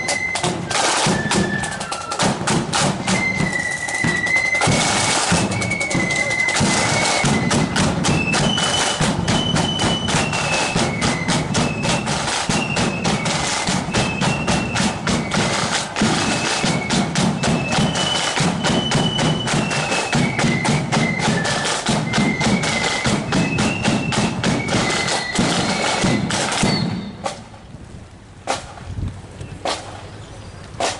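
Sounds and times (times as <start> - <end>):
flutes playing melody: 0.0 - 27.4
snare drum beating: 0.4 - 27.4.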